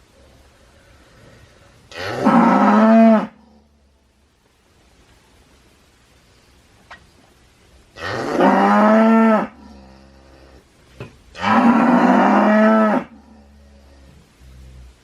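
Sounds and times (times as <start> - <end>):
cow mooing: 1.9 - 3.5, 8.0 - 10.6, 11.4 - 14.0.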